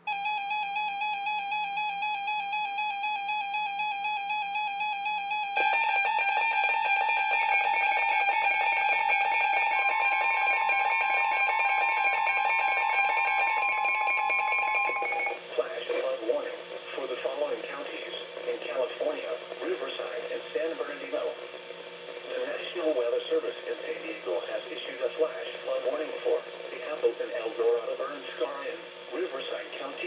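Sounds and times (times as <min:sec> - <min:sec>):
warbling electronic alarms: 0:00.0 - 0:15.4
steady warning tone: 0:00.0 - 0:16.4.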